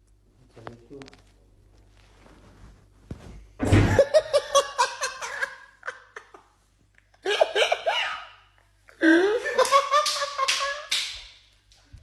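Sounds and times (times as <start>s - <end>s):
person laughing hard: 3.8s - 6.4s.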